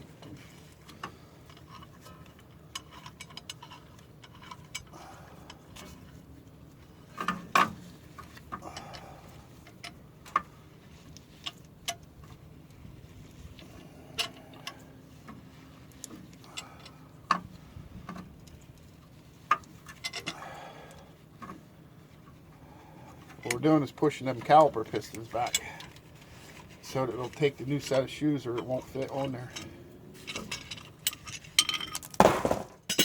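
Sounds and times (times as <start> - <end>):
metal tools clicking and knocking: 30.3 - 33.0.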